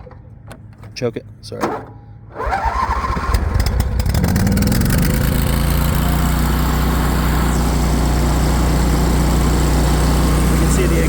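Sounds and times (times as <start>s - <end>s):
mower engine running: 2.4s - 11.0s.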